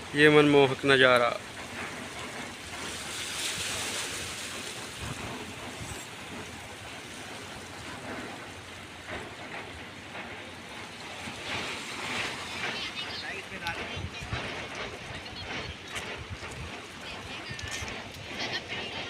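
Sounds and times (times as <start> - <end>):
sea waves washing ashore: 0.0 - 19.0.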